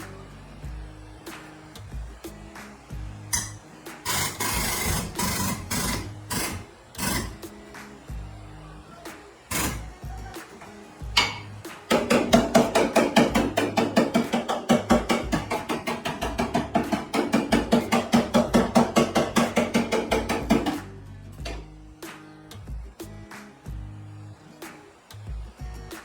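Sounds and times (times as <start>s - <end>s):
hammering on sheet metal: 3.4s - 7.5s, 11.2s - 20.9s.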